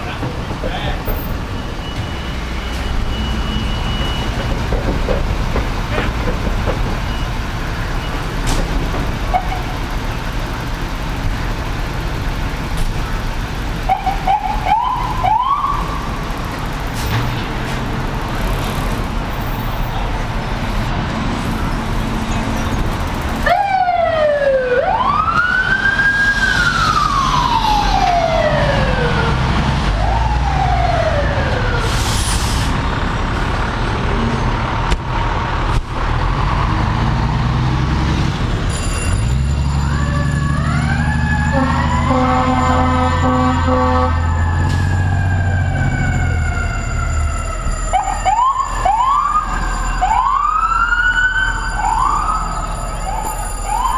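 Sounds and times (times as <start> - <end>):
low rumble of traffic: 0.0 - 53.9
fire engine siren wailing: 13.8 - 16.4, 23.4 - 32.2, 39.1 - 53.9.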